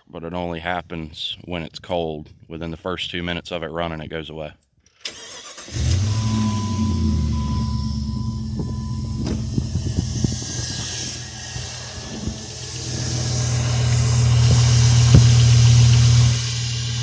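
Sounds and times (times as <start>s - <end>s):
car engine running with low knock: 5.8s - 17.0s.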